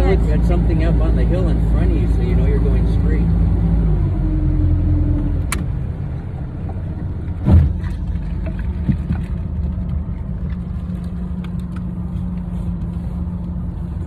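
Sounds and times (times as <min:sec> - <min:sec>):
outboard motor running: 0:00.0 - 0:14.0
thump: 0:07.4 - 0:08.0.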